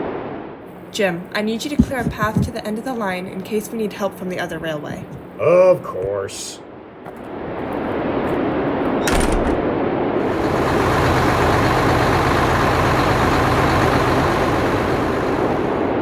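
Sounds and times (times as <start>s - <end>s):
railway engine rumble: 10.2s - 16.0s.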